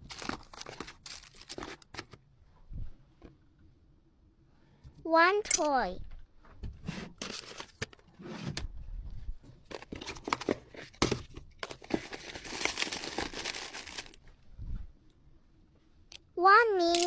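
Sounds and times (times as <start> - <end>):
packaging crinkling: 0.0 - 2.1, 11.6 - 14.2.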